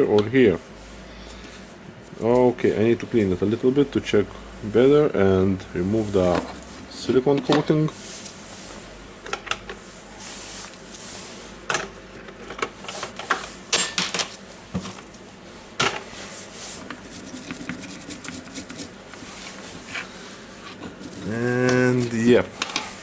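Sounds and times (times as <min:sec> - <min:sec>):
hand tool scraping coating: 0:16.8 - 0:18.9.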